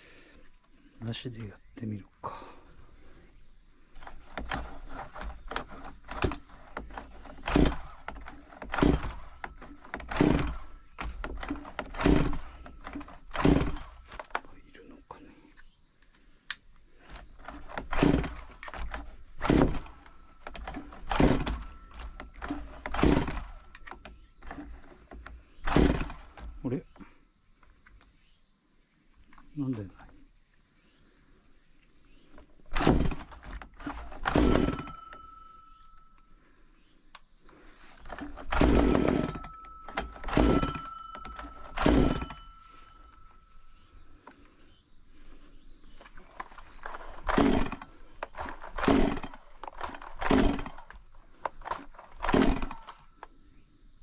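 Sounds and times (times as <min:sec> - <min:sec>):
chainsaw recoil starter pulls: 0:03.9 - 0:14.6, 0:17.0 - 0:26.8, 0:32.6 - 0:35.8, 0:37.5 - 0:44.4, 0:45.9 - 0:53.2.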